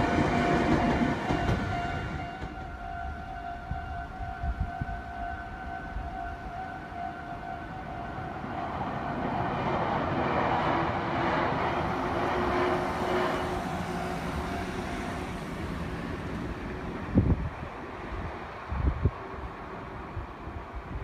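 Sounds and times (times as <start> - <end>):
level crossing warning signal: 0.0 - 9.5, 12.6 - 16.0
electric train passing: 0.0 - 21.0.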